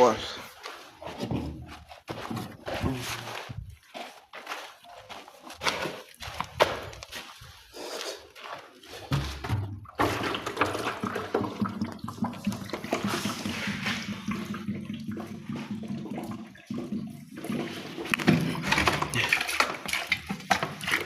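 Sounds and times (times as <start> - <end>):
water splashing on walls: 9.0 - 21.0.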